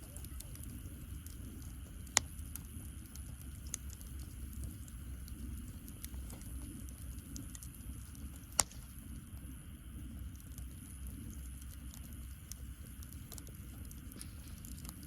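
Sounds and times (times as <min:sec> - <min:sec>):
wood fire crackling: 0:00.0 - 0:15.0
fire sharp pop: 0:08.5 - 0:08.9.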